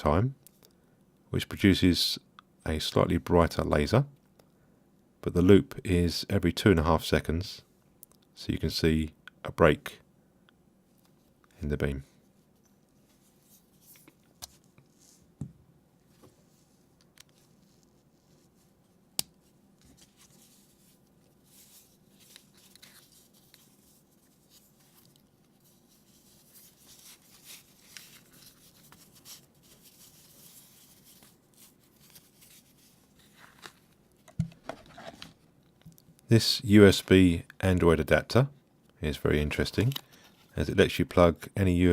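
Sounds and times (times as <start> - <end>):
soft scraping and rustling: 12.2 - 15.4, 16.0 - 35.4.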